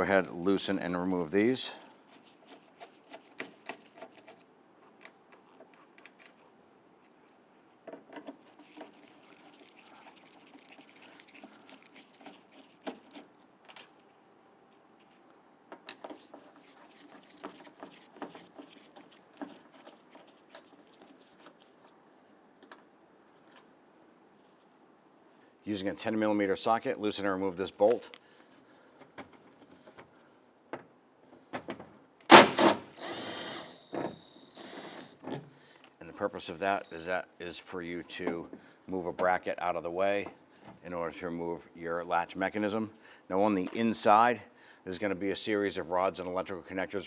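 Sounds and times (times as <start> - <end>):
screwdriver clicks and scrapes: 32.3 - 35.3.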